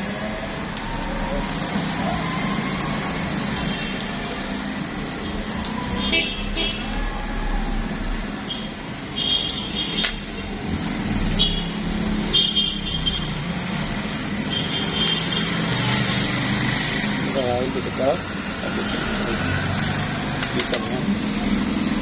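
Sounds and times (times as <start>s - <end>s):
road traffic rumble: 0.0s - 22.0s.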